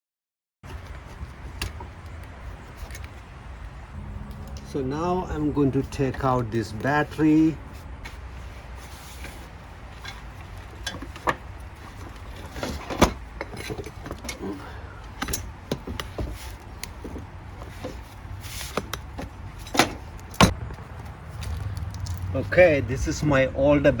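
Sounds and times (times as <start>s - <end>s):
low background rumble: 0.8s - 23.2s
knocks and clunks of car battery: 10.8s - 18.0s.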